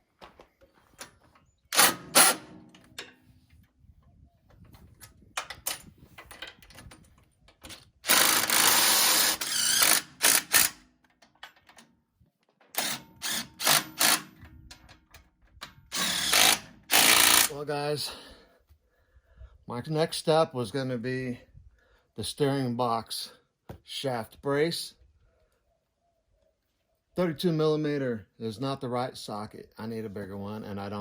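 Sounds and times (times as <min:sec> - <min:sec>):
power tool tightening bolts: 0:00.9 - 0:03.0, 0:05.4 - 0:11.9, 0:12.6 - 0:17.6.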